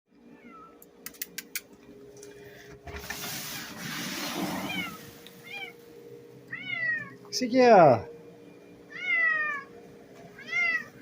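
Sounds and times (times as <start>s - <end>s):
sharp clicks: 0.8s - 1.8s
noisy rustle: 2.9s - 5.7s
cat meowing: 4.5s - 5.8s, 6.5s - 7.2s, 8.9s - 9.7s, 10.4s - 11.0s.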